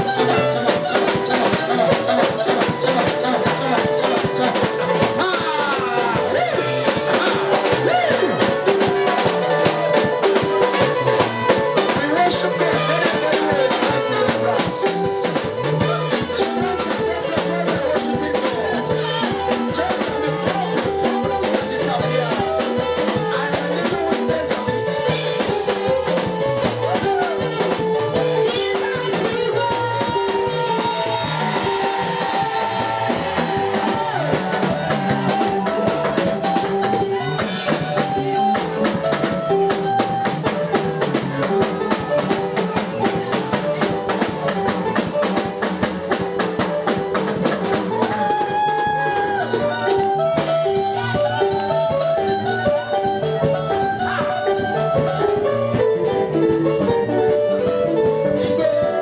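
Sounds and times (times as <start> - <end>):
drum kit steady beat: 0.0 - 59.0
guitar: 0.0 - 59.0.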